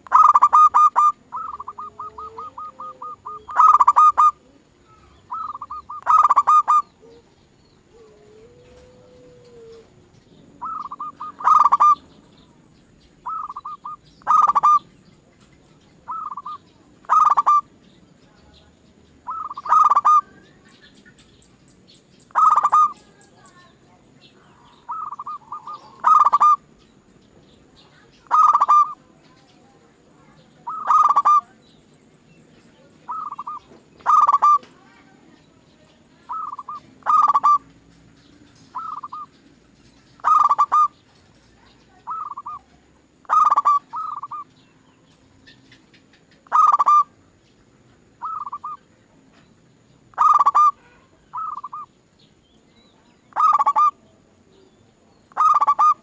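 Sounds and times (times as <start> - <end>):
dove cooing: 0.0 - 12.2, 13.2 - 14.9, 16.0 - 17.7, 19.2 - 20.4, 22.3 - 23.6, 24.7 - 26.7, 28.2 - 29.5, 30.2 - 31.6, 33.1 - 35.0, 36.3 - 37.7, 38.5 - 39.4, 40.1 - 44.5, 46.4 - 47.2, 48.2 - 48.8, 50.1 - 51.9, 53.3 - 54.0, 55.3 - 56.0.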